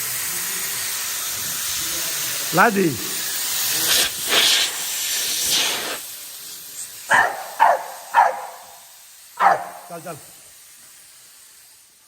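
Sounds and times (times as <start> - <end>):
spraying hiss: 0.0 - 12.0
dog barking: 7.1 - 8.8, 9.4 - 9.9.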